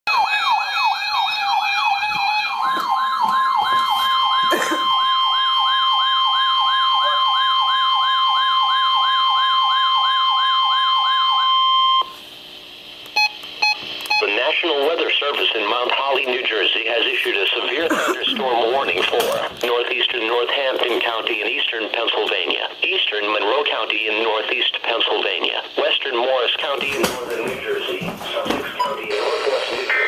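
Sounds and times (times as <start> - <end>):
sweeping siren-like tone: 0.1 - 12.0
steady high tone: 1.6 - 11.5, 27.9 - 30.0
short beeps: 7.0 - 7.4.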